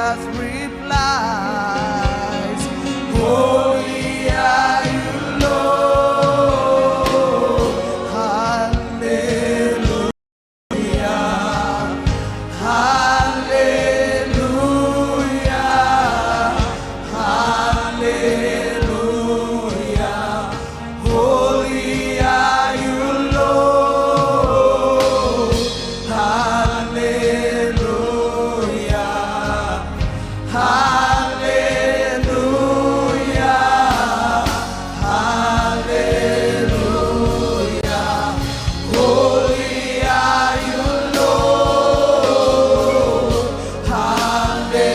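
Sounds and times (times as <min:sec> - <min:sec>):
choir singing: 0:00.0 - 0:44.9
instrumental accompaniment: 0:10.7 - 0:44.9.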